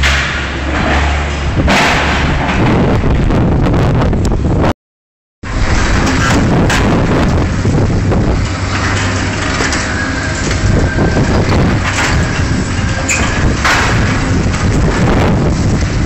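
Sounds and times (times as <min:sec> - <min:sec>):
sharp knocks: 0:00.0 - 0:03.3
excavator machine hum: 0:00.0 - 0:04.6, 0:05.4 - 0:16.0
steel crunching and scraping: 0:00.0 - 0:04.6, 0:05.4 - 0:16.0.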